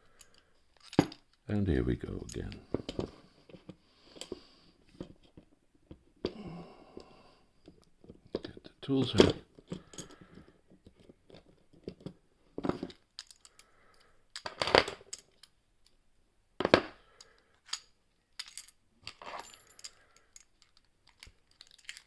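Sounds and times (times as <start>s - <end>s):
metal lock picks clicking: 12.9s - 16.0s, 17.2s - 22.0s.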